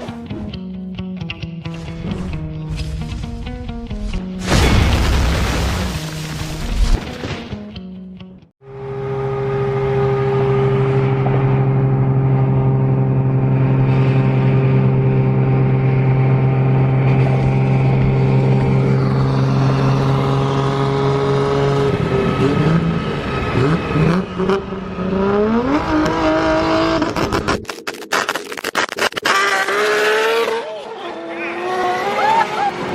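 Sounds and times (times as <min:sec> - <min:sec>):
car engine revving: 0:08.8 - 0:27.8, 0:28.8 - 0:32.9.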